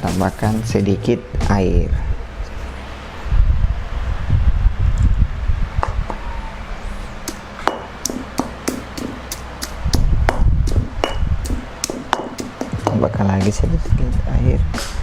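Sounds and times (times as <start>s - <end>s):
pestle pounding in a mortar: 7.2s - 15.0s.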